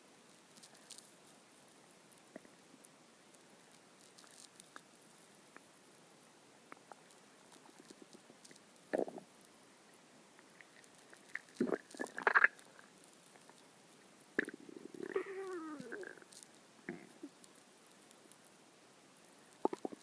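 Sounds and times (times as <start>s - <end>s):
stomach growling: 7.6s - 9.3s, 10.6s - 13.6s, 14.4s - 17.4s, 19.6s - 20.0s.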